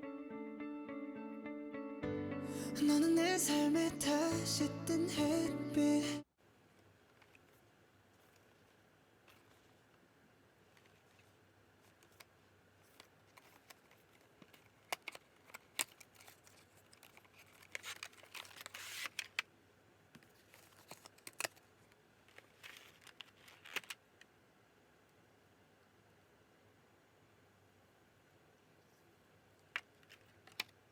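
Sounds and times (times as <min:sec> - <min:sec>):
packaging crinkling: 0:10.7 - 0:19.4, 0:20.2 - 0:24.0.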